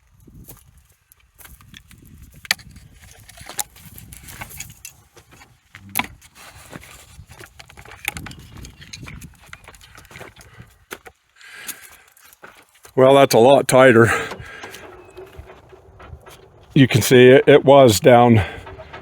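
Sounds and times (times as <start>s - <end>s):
low rumble: 13.9s - 19.0s.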